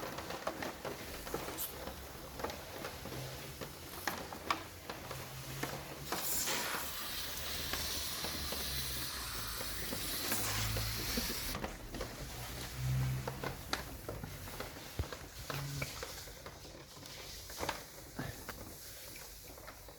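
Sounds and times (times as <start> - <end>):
sprayer hissing: 6.0 - 11.6.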